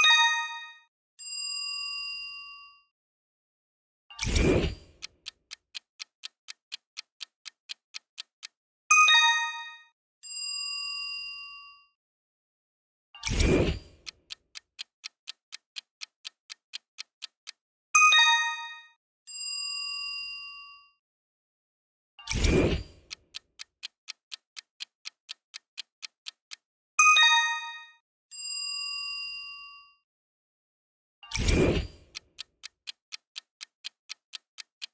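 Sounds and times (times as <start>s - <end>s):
clock ticking: 4.2s - 9.8s, 13.2s - 18.9s, 22.3s - 27.9s, 31.3s - 34.9s
bright chime: 9.1s - 9.8s, 18.1s - 18.9s.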